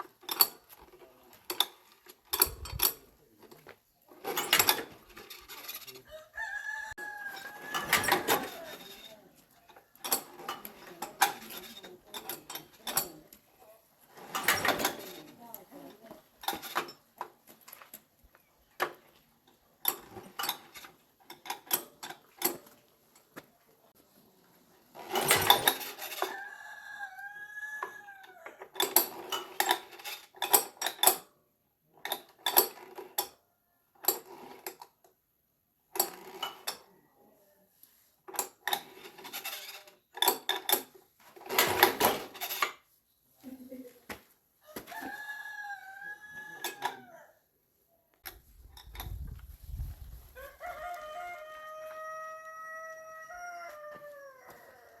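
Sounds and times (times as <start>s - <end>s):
metal tools clinking: 0.1s - 3.6s, 4.2s - 6.1s, 7.4s - 13.4s
rooster crowing: 6.1s - 8.7s, 26.2s - 28.5s, 44.6s - 47.4s, 50.4s - 55.0s.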